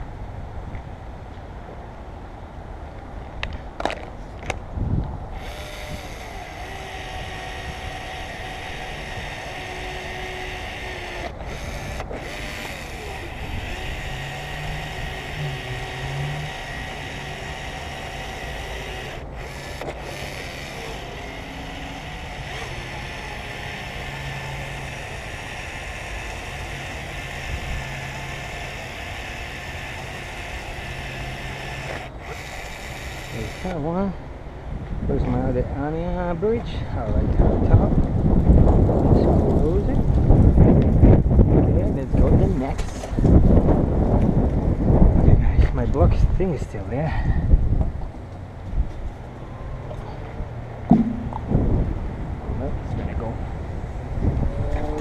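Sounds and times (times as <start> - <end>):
sharp knocks: 50.9 - 51.8.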